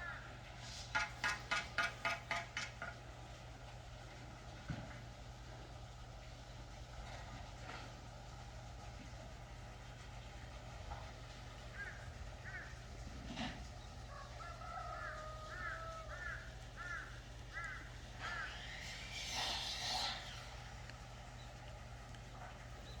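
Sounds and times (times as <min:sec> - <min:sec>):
steady low hum: 0:02.4 - 0:23.0
bird calling: 0:11.6 - 0:13.0, 0:13.7 - 0:21.7.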